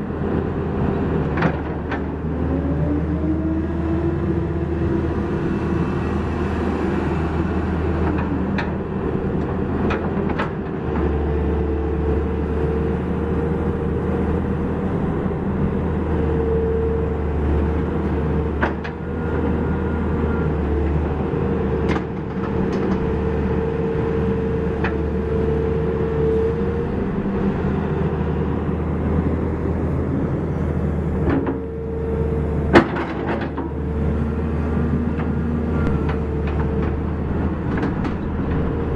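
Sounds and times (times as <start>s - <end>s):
diesel engine hum: 0.0s - 38.9s
hydraulic whine: 12.0s - 38.9s.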